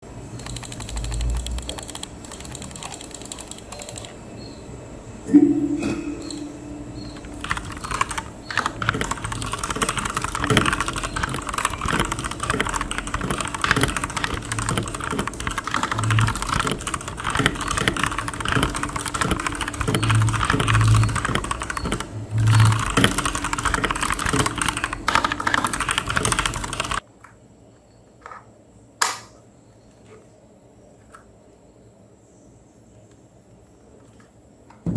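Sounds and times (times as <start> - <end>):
fast typing on mechanical keyboard: 0.2 - 4.2, 7.0 - 27.0.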